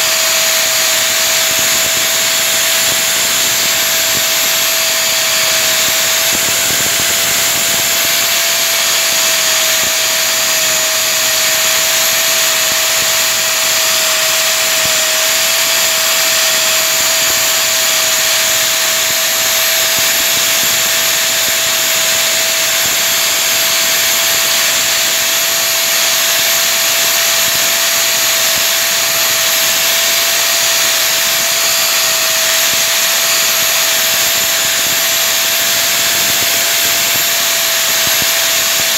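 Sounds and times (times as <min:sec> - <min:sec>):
constant machine whine: 0:00.0 - 0:38.9
loud machine hiss: 0:00.0 - 0:38.9.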